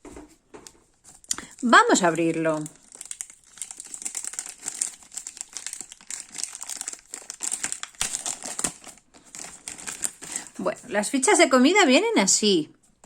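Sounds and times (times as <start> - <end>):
packaging crinkling: 0.8 - 10.8.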